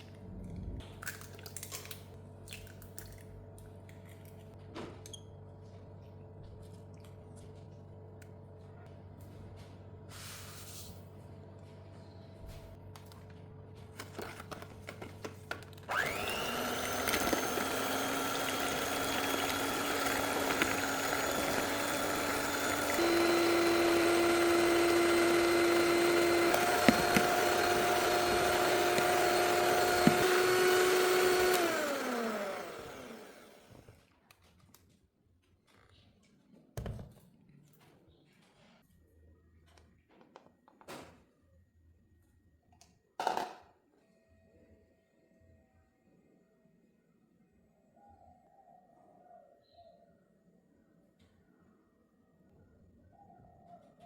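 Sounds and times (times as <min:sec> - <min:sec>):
electric mixer motor whining: 0:15.5 - 0:33.9.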